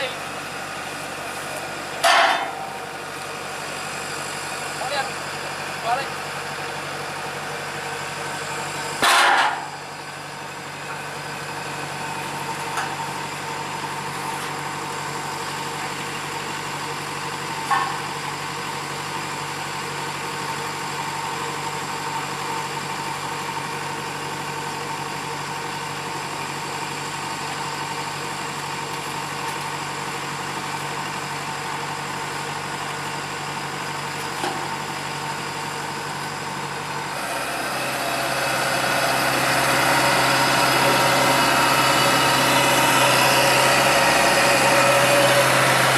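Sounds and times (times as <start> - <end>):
diesel harvester engine running: 0.0 - 45.9.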